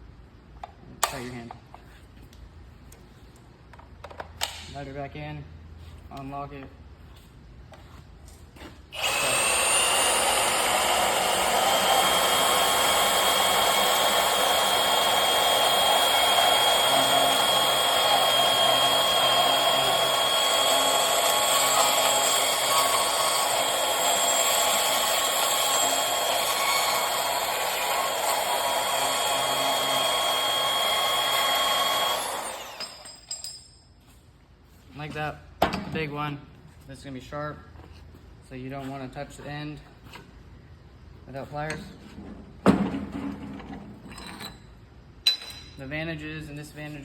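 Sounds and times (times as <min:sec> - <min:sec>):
band saw cutting metal: 0:09.0 - 0:33.2.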